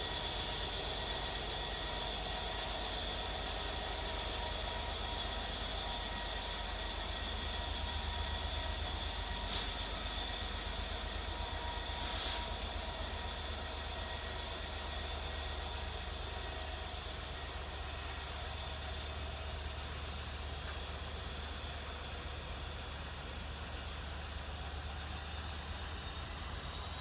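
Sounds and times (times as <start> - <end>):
locomotive rumble: 0.0 - 27.0
short high hisses: 9.5 - 9.9, 11.9 - 12.6.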